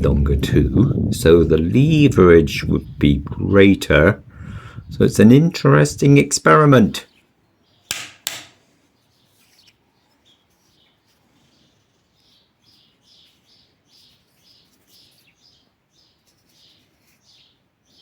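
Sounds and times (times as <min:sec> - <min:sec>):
sharp knocks: 0:07.9 - 0:08.6
faint bird chirps: 0:08.9 - 0:18.0.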